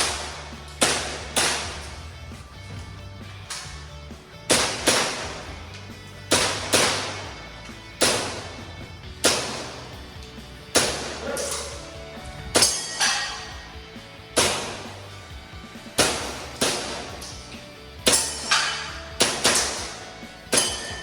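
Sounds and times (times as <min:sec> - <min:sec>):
airsoft pistol shots: 0:00.0 - 0:02.0, 0:04.5 - 0:05.6, 0:06.3 - 0:07.4, 0:08.0 - 0:10.0, 0:10.7 - 0:11.6, 0:14.4 - 0:15.0, 0:16.0 - 0:17.4, 0:18.1 - 0:21.0.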